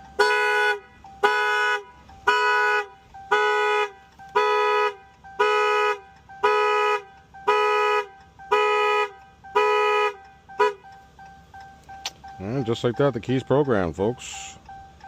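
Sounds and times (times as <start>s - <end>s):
car horn honking: 0.0s - 10.9s.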